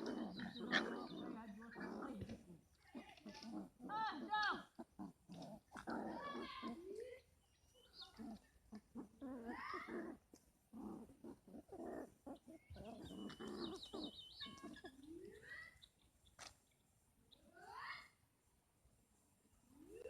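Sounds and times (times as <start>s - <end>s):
puppies whining and yelping: 0.0s - 1.3s, 7.9s - 10.4s, 11.0s - 15.9s.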